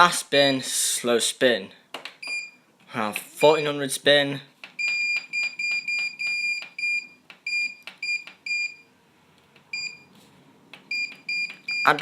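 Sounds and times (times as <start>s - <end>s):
washing machine panel beeps: 2.2s - 2.6s, 3.4s - 3.8s, 4.8s - 8.9s, 9.7s - 10.1s, 10.9s - 12.0s.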